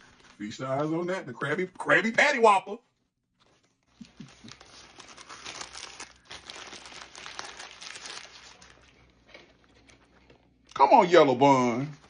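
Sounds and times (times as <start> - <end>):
paper wrapper crinkling: 0.0 - 1.0, 3.4 - 10.5.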